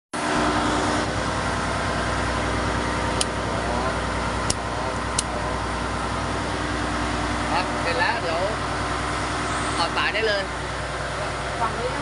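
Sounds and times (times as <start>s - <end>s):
ship engine hum: 0.2s - 12.0s.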